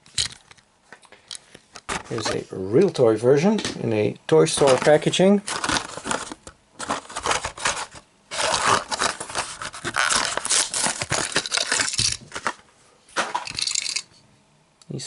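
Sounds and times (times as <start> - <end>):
plastic and cardboard crinkling: 1.8 - 2.5, 4.4 - 12.6.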